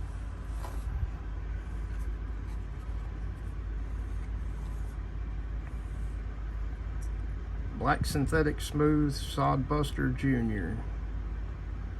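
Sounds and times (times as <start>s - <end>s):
low background rumble: 0.0s - 11.9s.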